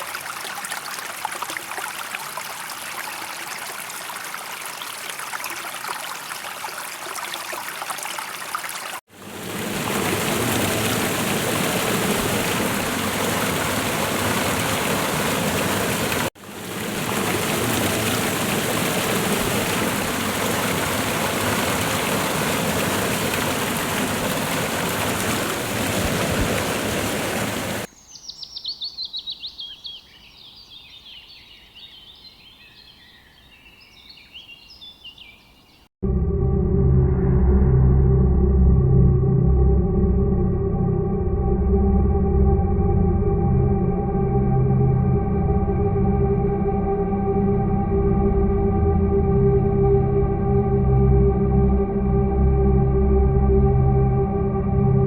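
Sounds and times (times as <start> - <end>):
flowing stream: 0.0 - 27.9
waterfall rushing: 9.0 - 27.9
bird singing: 27.9 - 35.9.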